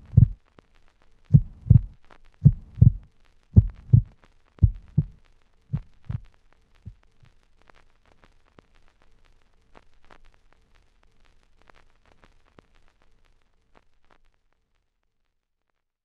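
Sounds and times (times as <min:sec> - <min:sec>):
low steady hum: 0:00.0 - 0:00.4, 0:01.3 - 0:06.3
crackling hiss: 0:00.0 - 0:14.5.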